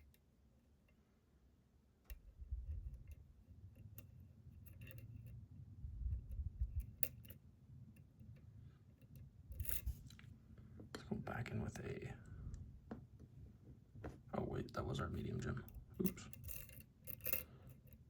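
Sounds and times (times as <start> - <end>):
low rumble of lock handling: 2.1 - 10.3, 15.2 - 18.0.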